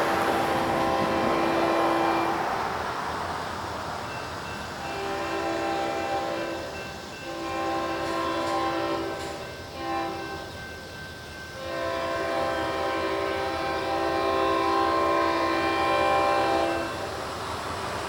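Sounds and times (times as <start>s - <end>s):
locomotive air horn blasts: 0.0s - 2.8s, 4.8s - 10.6s, 11.6s - 17.1s.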